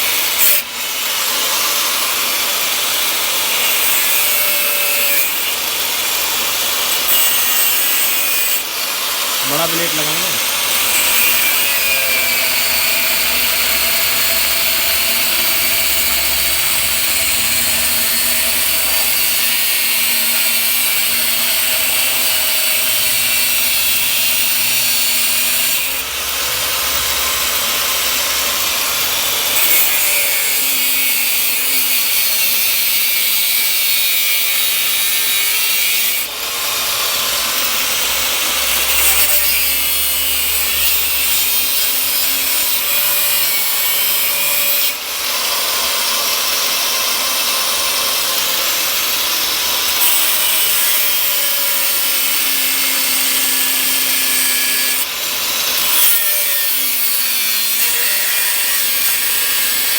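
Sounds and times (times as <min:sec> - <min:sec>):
angle grinder cutting: 0:00.0 - 0:59.9.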